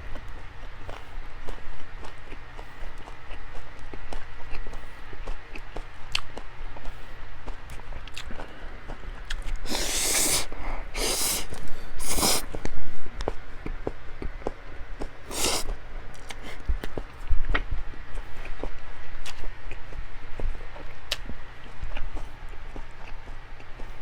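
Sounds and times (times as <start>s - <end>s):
wet chewing and mouth clicks: 0.1s - 24.0s
breathy nose exhales: 9.6s - 12.5s, 15.3s - 15.7s.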